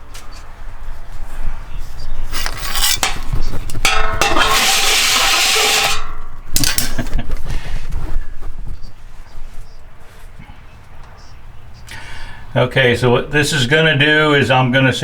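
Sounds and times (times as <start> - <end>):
metal pans clattering and scraping: 2.4 - 7.0.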